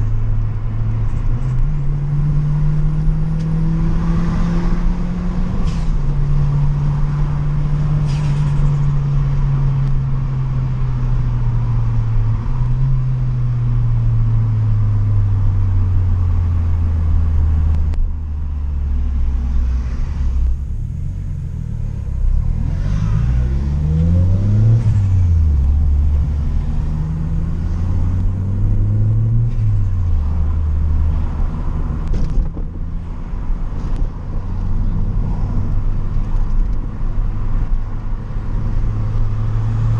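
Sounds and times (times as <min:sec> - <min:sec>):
turbocharged car engine revving: 0:21.7 - 0:32.6.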